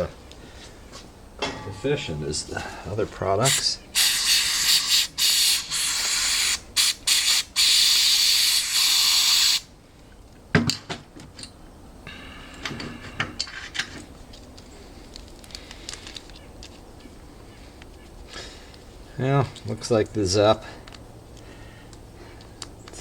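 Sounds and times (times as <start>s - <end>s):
aerosol spray hissing: 3.5s - 9.6s.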